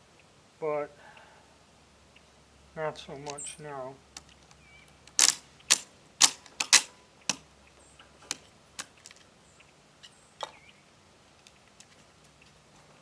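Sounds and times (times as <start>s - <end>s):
cartridges clicking into magazine: 5.1s - 7.4s.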